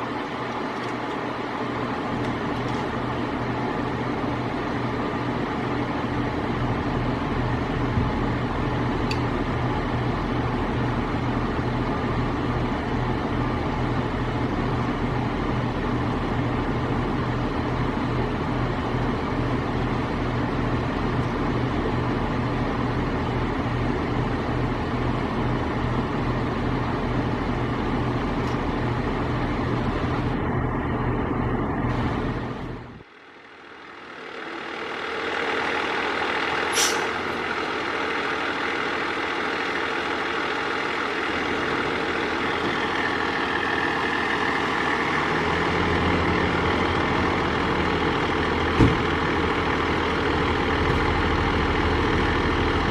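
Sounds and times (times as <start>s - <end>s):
fire truck engine idling: 0.0s - 52.9s
vehicle engine building up: 28.2s - 52.9s.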